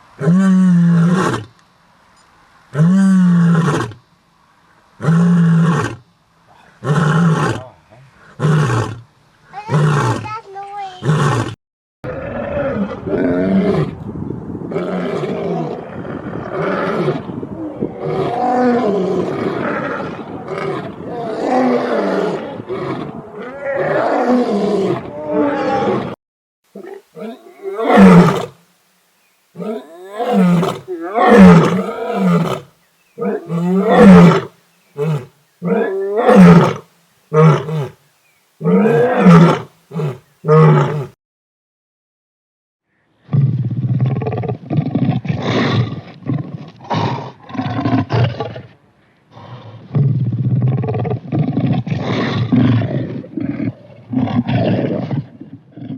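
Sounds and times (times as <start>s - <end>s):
lion roaring: 11.0s - 14.0s, 14.7s - 28.6s, 29.6s - 38.0s, 38.6s - 41.1s, 49.3s - 55.9s.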